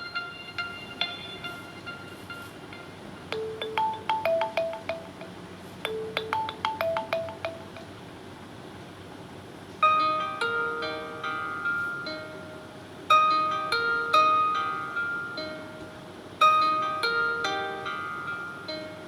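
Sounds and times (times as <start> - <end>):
another phone ringtone: 0.0 - 8.0
chime-like ringtone melody: 0.0 - 8.0, 9.8 - 15.8, 16.4 - 19.0.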